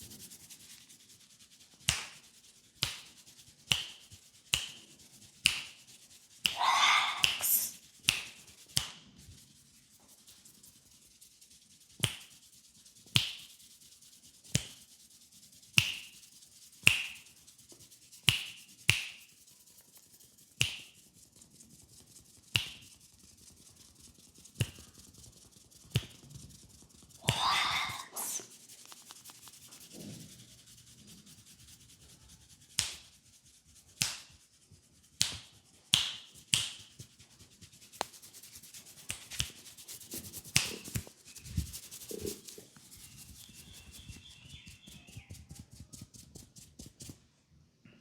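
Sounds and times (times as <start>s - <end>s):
hands rubbing hair: 0.0s - 47.2s
finger snaps: 1.8s - 2.2s, 2.8s - 9.1s, 12.0s - 12.3s, 13.2s - 13.5s, 14.5s - 14.8s, 15.8s - 16.2s, 16.8s - 17.3s, 18.2s - 19.3s, 20.6s - 21.0s, 22.5s - 22.9s, 24.6s - 24.8s, 26.0s - 26.2s, 27.2s - 29.5s, 32.8s - 33.0s, 34.0s - 34.3s, 35.2s - 37.0s, 39.1s - 39.6s, 40.3s - 41.1s.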